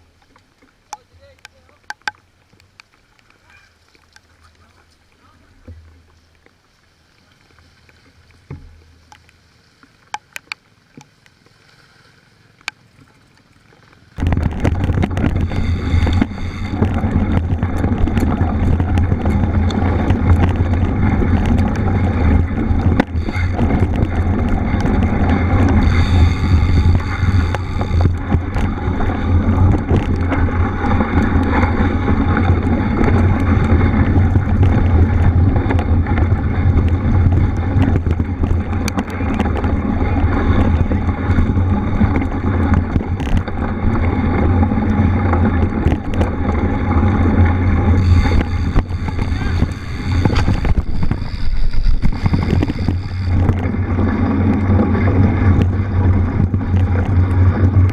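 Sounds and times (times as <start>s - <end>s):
bicycle rumbling and rattling off-road: 0.0s - 57.9s
faint clicks: 0.1s - 11.7s, 12.5s - 29.0s, 29.6s - 44.1s, 47.4s - 53.8s
wind buffeting the microphone: 14.2s - 57.9s.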